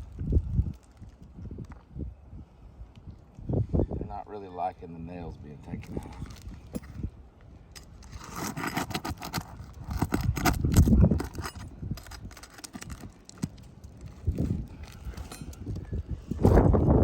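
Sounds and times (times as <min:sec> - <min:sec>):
metal tool scraping shingles: 0:07.8 - 0:16.7.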